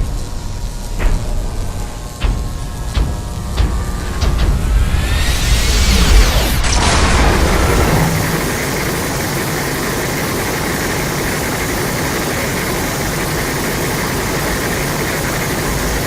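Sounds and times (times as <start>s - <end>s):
low rumble: 0.0s - 9.5s
dense rushing noise: 0.0s - 10.8s.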